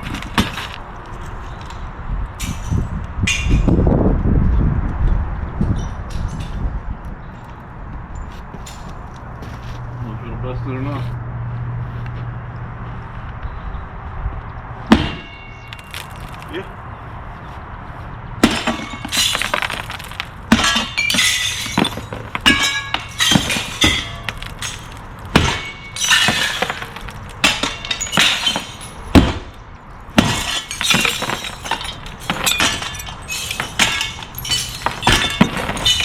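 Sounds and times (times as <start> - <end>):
glass shattering: 14.9 - 16.5, 18.4 - 36.0
glass shards tinkling: 15.2 - 16.5, 18.5 - 29.1, 30.1 - 36.0.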